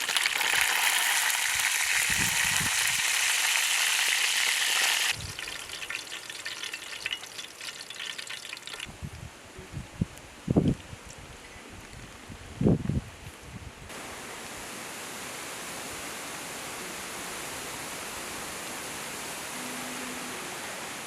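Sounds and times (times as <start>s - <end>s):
food sizzling in a pan: 0.0s - 8.7s.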